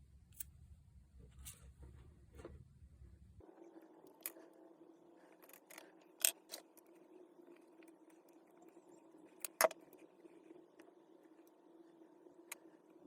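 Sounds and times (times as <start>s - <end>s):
faint steady hum: 0.0s - 13.0s.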